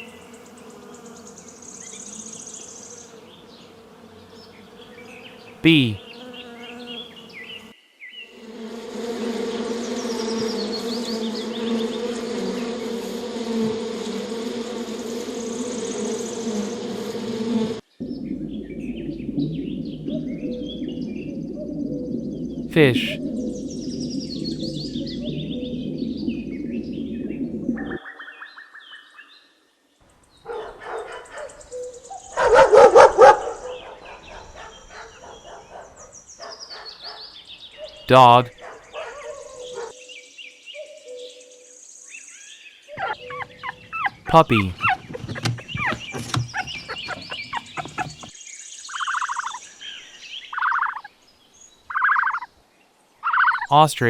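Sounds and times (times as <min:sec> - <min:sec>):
bees buzzing: 0:08.4 - 0:17.8, 0:43.0 - 0:48.3
dog barking: 0:30.5 - 0:31.6, 0:32.3 - 0:38.0, 0:38.6 - 0:39.9, 0:43.0 - 0:48.3
bird chirps: 0:43.0 - 0:48.3.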